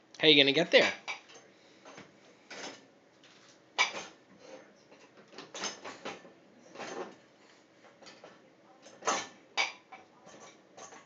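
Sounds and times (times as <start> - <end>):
dishes clinking in dishwasher rack: 3.8 - 4.2, 5.0 - 7.2, 8.0 - 11.0.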